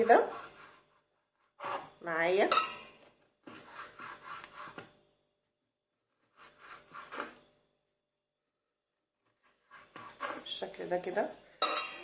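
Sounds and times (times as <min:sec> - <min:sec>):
knife sawing through fruit: 0:00.0 - 0:02.0.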